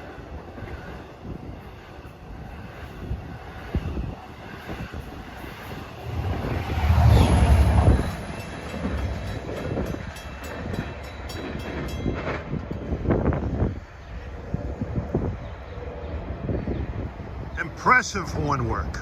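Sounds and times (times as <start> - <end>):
diesel locomotive rumble: 0.0 - 19.0
train wheels clicking over rail joints: 3.7 - 13.5.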